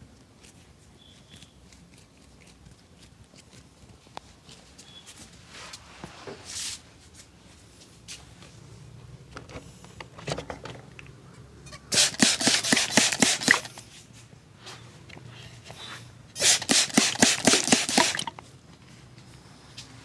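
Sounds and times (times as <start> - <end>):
hands rubbing and tapping: 16.7 - 18.4.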